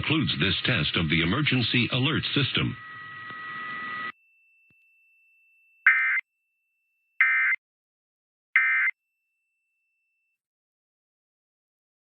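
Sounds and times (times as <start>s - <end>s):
two-tone digital data squawk: 5.9s - 6.2s, 7.2s - 7.6s, 8.6s - 9.0s.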